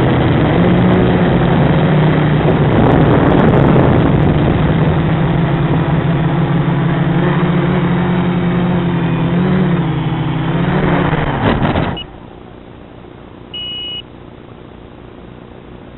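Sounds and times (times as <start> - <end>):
short high beep: 12.0 - 12.2, 13.5 - 14.1.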